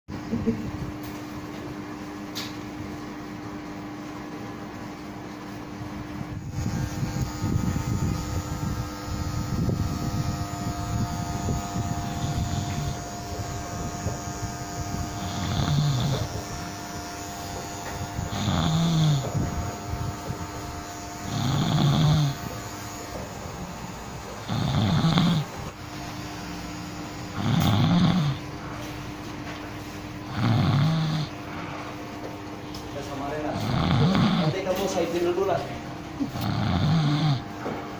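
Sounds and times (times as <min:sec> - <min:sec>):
person snoring: 0:11.8 - 0:13.6, 0:15.0 - 0:16.6, 0:18.2 - 0:19.5, 0:21.2 - 0:22.6, 0:24.4 - 0:25.6, 0:27.3 - 0:28.6, 0:30.3 - 0:31.9, 0:33.4 - 0:34.7, 0:36.2 - 0:37.4.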